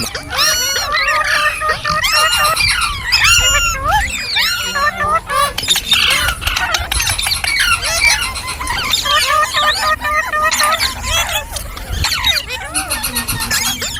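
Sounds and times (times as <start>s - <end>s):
parrots chirping and squawking: 0.0s - 13.9s.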